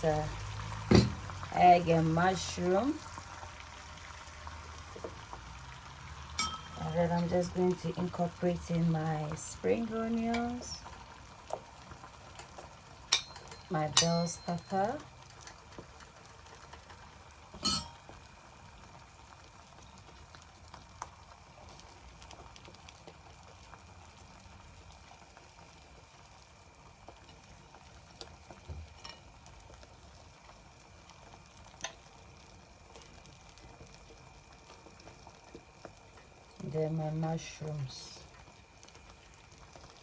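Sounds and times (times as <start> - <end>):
eggs sizzling in a pan: 0.0 - 40.0
sharp knocks and clinks: 6.4 - 6.8.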